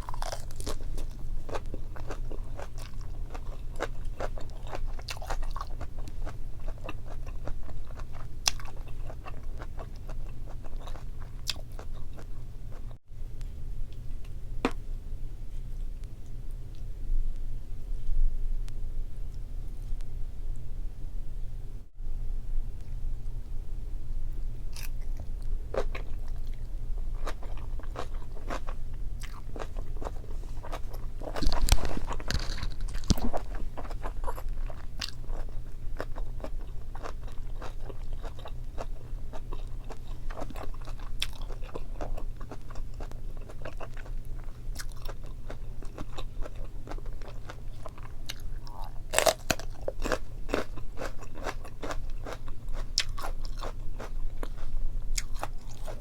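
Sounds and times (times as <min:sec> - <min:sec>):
close chewing and crunching: 0:00.0 - 0:13.0, 0:24.6 - 0:56.0
low hum: 0:12.2 - 0:40.8.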